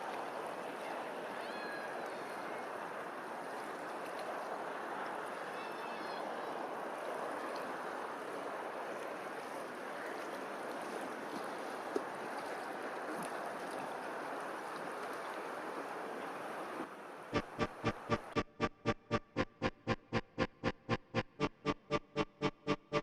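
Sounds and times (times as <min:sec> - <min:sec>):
rushing water: 0:00.0 - 0:18.2
music with pulsing beat: 0:17.4 - 0:23.0.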